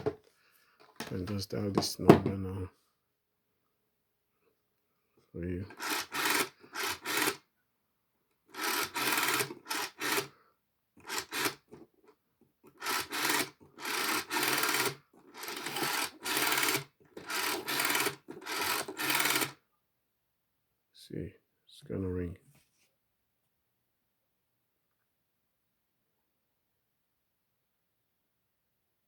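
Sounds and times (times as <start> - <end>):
rotary dial whirring: 5.7 - 7.4, 8.5 - 10.3, 11.0 - 11.8, 12.7 - 19.6.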